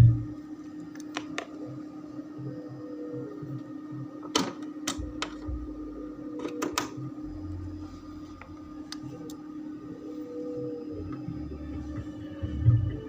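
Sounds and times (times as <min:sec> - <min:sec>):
steady electrical hum: 0:00.0 - 0:13.0.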